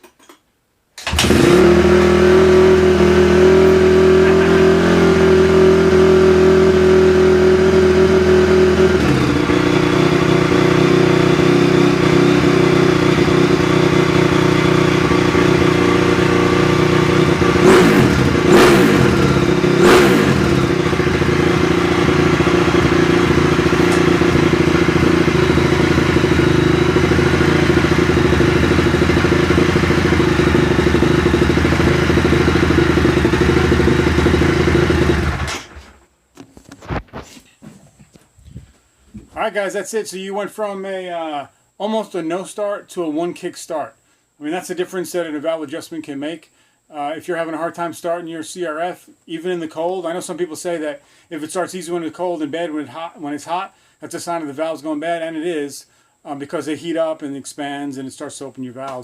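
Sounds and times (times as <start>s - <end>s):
motorcycle engine idling: 1.1s - 35.8s.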